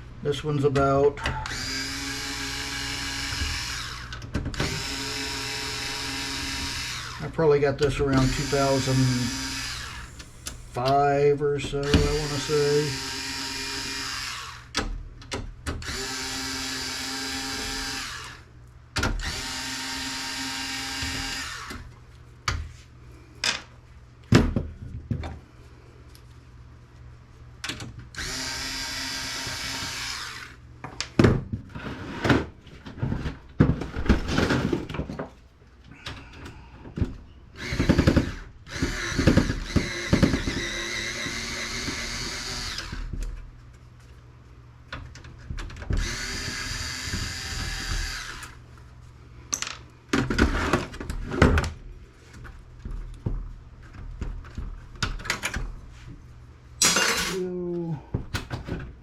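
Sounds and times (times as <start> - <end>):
power drill running: 1.4 - 7.3, 8.2 - 10.8, 11.8 - 14.7, 15.8 - 18.4, 19.2 - 21.8, 28.2 - 30.6, 37.6 - 43.1, 46.0 - 48.6.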